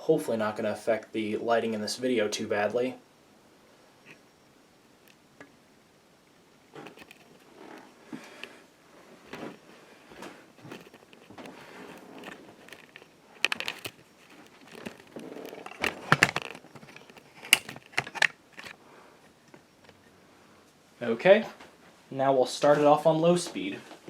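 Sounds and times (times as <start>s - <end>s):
handling clicks and rustling: 6.7s - 8.6s, 9.2s - 20.1s.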